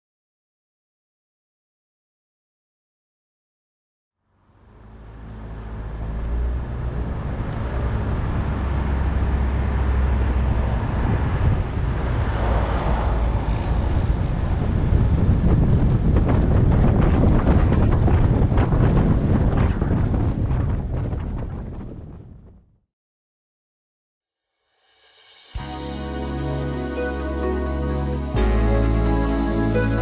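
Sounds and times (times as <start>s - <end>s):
car engine and tyres rumbling: 4.3s - 21.1s
wind noise on microphone: 7.1s - 22.8s.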